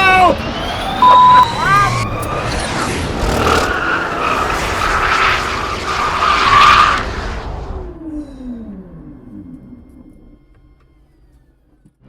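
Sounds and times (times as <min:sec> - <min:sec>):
car passing at high speed: 0:02.7 - 0:07.9.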